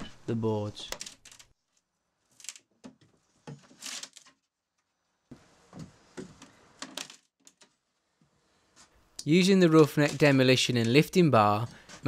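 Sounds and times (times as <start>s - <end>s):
faint steady hiss: 7.6s - 12.0s.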